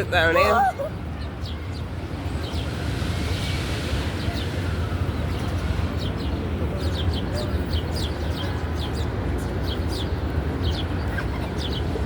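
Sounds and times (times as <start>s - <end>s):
small birds chirping: 5.2s - 12.0s.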